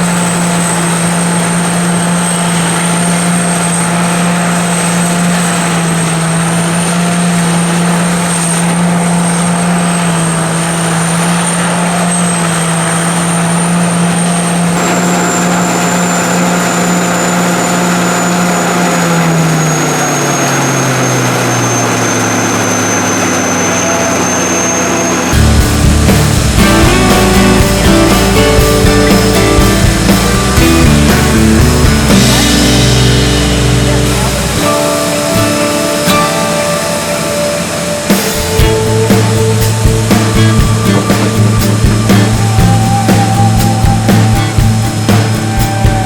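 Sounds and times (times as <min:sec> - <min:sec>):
combine harvester engine: 0:00.0 - 0:46.0.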